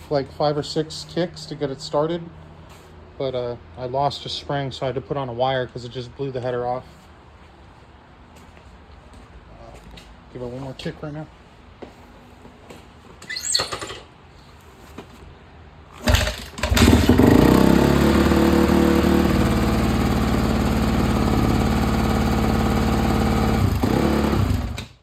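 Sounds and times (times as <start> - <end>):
motorcycle engine revving and idling: 16.0 - 24.9
motorcycle kick-start: 16.0 - 25.0.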